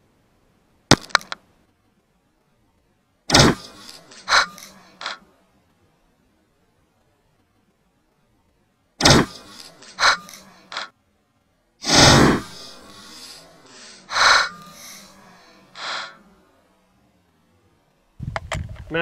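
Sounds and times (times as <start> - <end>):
rifle shots: 3.3 - 5.2, 9.0 - 10.2, 11.8 - 12.9.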